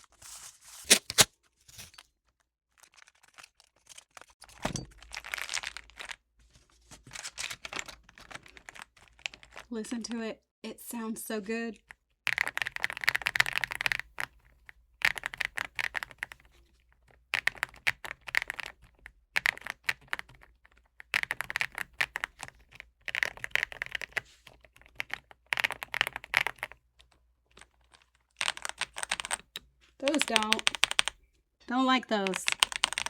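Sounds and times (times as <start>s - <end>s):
mechanical keyboard typing: 12.3s - 14.4s, 15.0s - 16.5s, 17.4s - 31.2s, 32.1s - 33.0s.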